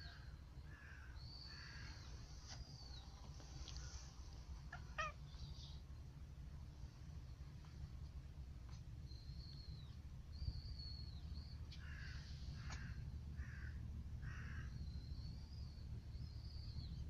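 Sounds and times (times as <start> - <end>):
low background hum: 0.0 - 17.0
crow cawing: 0.1 - 2.0, 4.7 - 5.2, 11.8 - 14.8.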